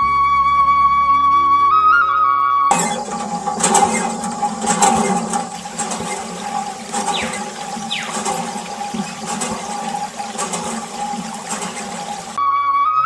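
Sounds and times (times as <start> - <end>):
low pump hum: 2.7 - 12.4
short falling squeaks: 2.7 - 12.4
water gushing and splashing: 2.7 - 12.4.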